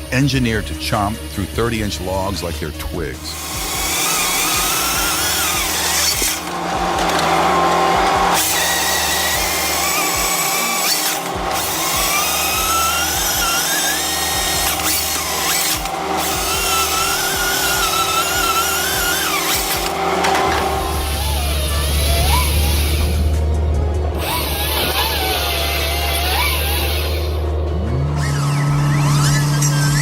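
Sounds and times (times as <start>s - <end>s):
power saw whining under load: 3.2s - 30.0s.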